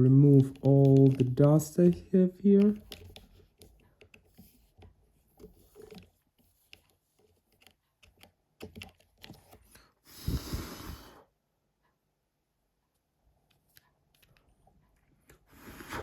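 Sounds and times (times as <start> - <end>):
breath blowing into microphone: 10.1 - 11.3.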